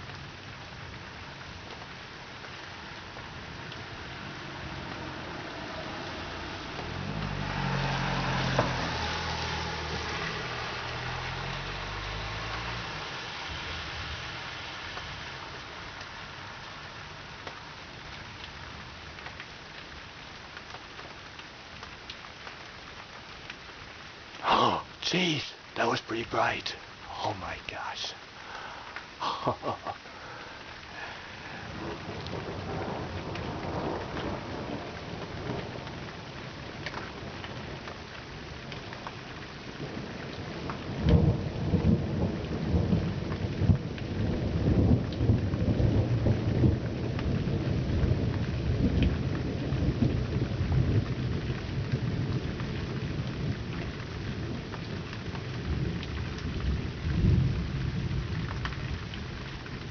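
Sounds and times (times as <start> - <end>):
rain hiss: 0.0 - 59.9
thunder rumbling: 30.9 - 36.0.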